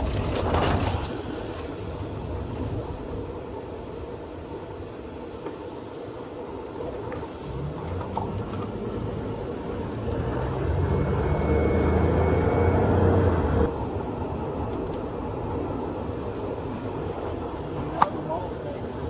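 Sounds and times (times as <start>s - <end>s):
truck engine and road rumble: 0.0s - 19.0s.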